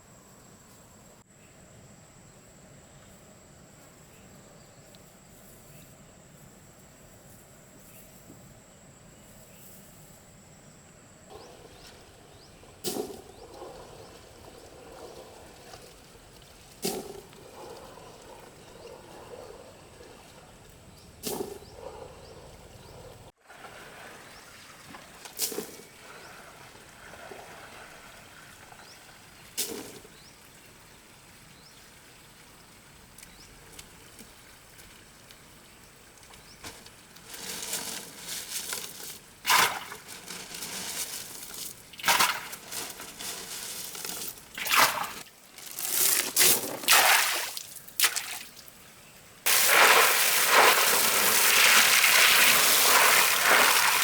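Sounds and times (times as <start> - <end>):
water sloshing and splashing: 23.4 - 30.0, 37.3 - 48.8, 49.5 - 54.0.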